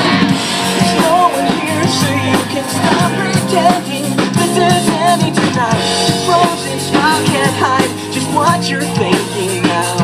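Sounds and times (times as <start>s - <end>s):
pop-rock song with drums and bass: 0.0s - 10.0s
wavering melodic line: 0.3s - 5.2s.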